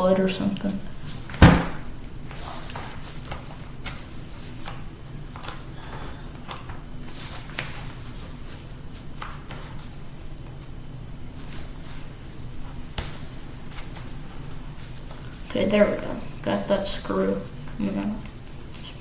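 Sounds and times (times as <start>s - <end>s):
sharp knock: 1.4s - 1.8s.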